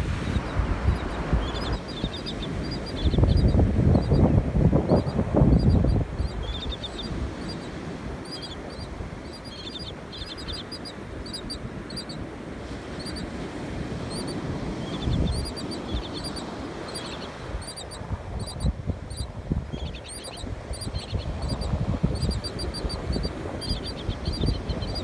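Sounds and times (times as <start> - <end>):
wind on microphone: 0.0 - 25.0
bird chirping: 0.2 - 12.2, 14.1 - 25.0.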